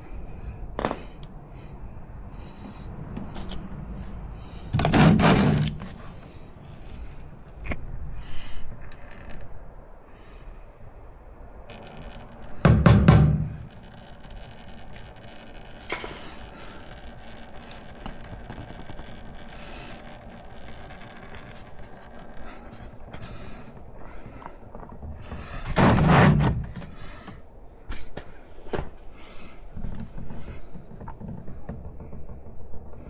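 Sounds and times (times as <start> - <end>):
clicks and scrapes of hand tools: 4.8 - 6.0.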